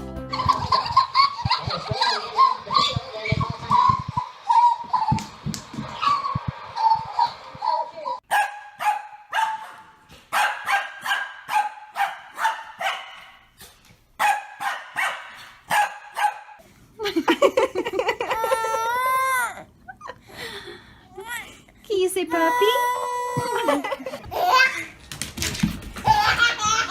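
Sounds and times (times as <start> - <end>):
dog wailing: 0.5 - 5.3
dog barking: 8.3 - 13.5, 14.2 - 16.6.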